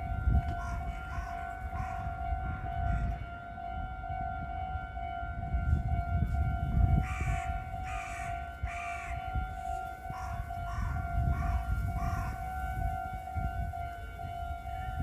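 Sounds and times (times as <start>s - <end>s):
railroad crossing warning bell: 0.0s - 15.0s
crow cawing: 0.5s - 2.3s, 7.0s - 9.2s, 10.1s - 12.4s.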